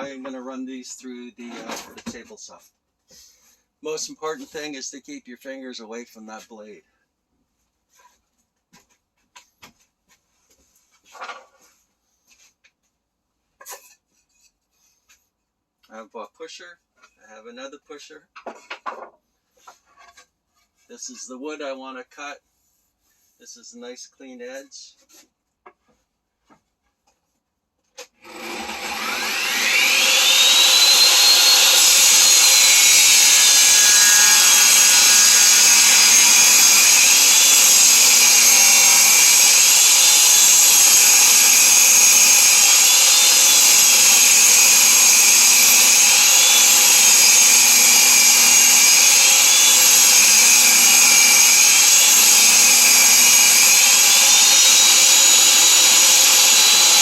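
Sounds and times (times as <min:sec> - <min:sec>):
board ripped through saw blade: 0:28.1 - 0:57.0
table saw motor whine: 0:28.2 - 0:57.0.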